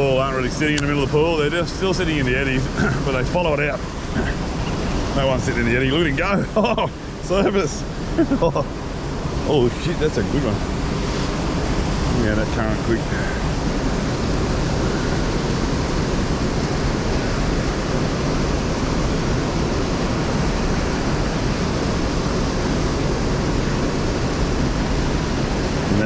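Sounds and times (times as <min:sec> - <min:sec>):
fast river current rushing: 0:00.0 - 0:26.0.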